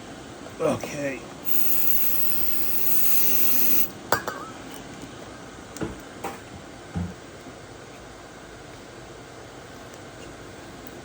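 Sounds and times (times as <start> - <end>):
aerosol can spraying: 1.5 - 3.9.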